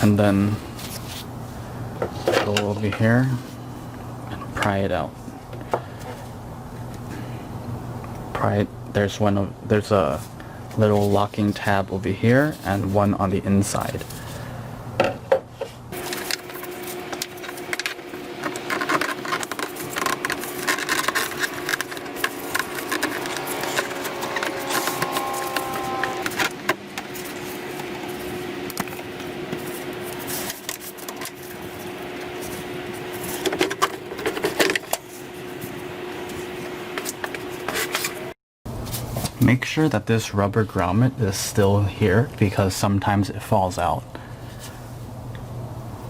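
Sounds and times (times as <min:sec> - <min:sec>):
faint steady hum: 0:00.0 - 0:38.1, 0:38.7 - 0:46.0
plastic parts clicking and scraping: 0:17.2 - 0:27.4.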